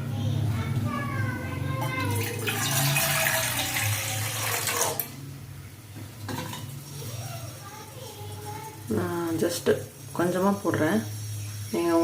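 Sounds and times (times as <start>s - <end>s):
water pouring into vessel: 1.9s - 5.2s.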